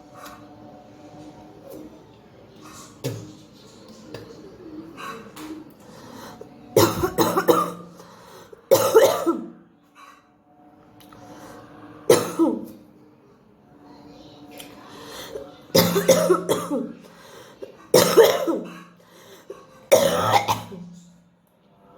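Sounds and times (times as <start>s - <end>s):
woman coughing: 6.8s - 7.9s, 8.7s - 9.5s, 12.1s - 12.6s, 15.8s - 17.0s, 17.9s - 18.9s, 19.9s - 20.9s.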